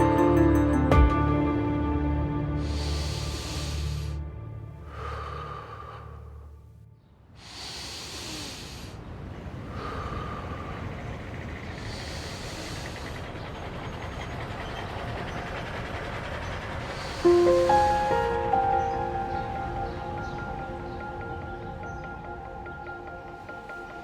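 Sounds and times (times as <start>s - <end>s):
hiss: 2.6s - 4.2s, 7.4s - 13.6s, 15.7s - 18.7s.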